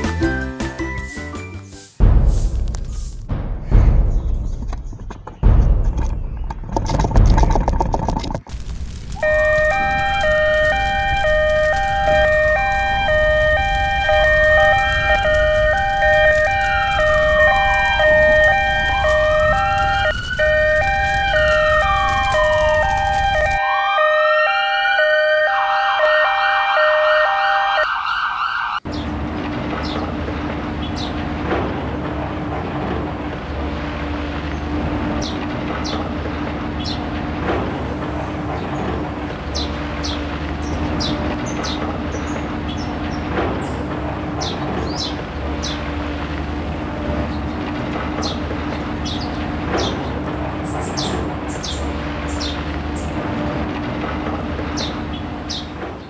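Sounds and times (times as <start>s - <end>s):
wailing sirens: 9.1s - 56.0s
two-tone hi-lo siren: 9.2s - 28.9s
bird chirps: 39.4s - 43.8s, 44.4s - 45.9s, 48.2s - 53.2s, 54.7s - 55.8s.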